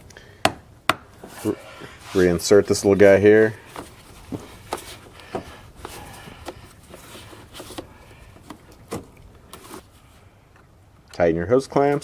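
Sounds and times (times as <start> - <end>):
brief scraping rub: 1.3 - 10.3.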